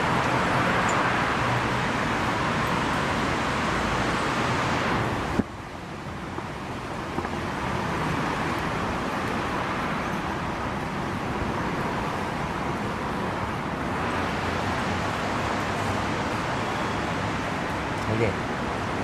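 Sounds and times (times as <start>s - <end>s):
road traffic noise: 0.0s - 19.0s.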